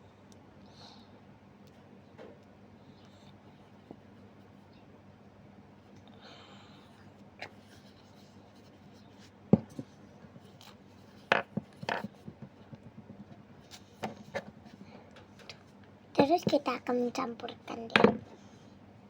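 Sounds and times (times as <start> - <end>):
light tapping and rubbing: 7.5 - 15.6.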